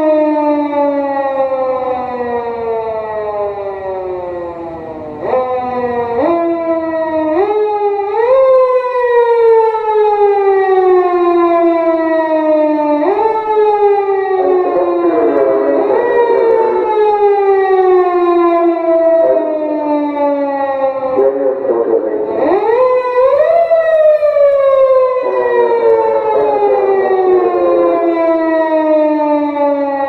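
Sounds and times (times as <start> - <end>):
electronic police siren wailing: 0.0 - 30.0
second siren tone: 9.3 - 30.0.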